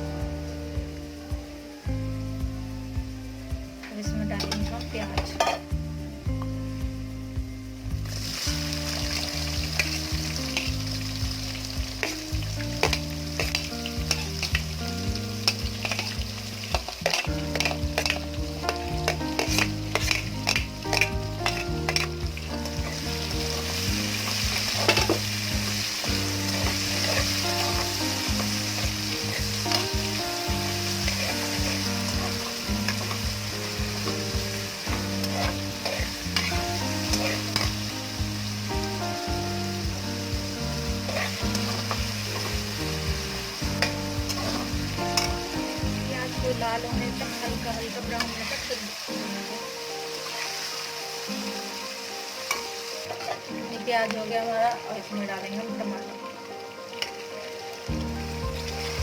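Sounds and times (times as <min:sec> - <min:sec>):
onions sizzling in oil: 0:00.0 - 0:59.0
spoon scraping pan: 0:04.3 - 0:05.7, 0:15.4 - 0:30.2, 0:30.9 - 0:37.9, 0:41.0 - 0:42.6, 0:43.6 - 0:45.4.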